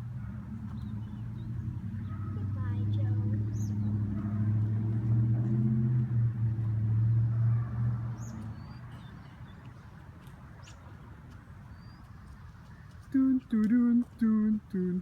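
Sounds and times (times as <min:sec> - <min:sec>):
vehicle engine humming: 0:00.0 - 0:09.5, 0:13.1 - 0:15.0.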